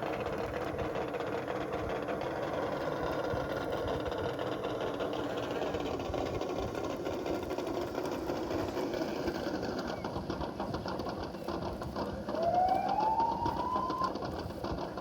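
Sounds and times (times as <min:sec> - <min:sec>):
smooth rising whine: 0:12.2 - 0:14.2.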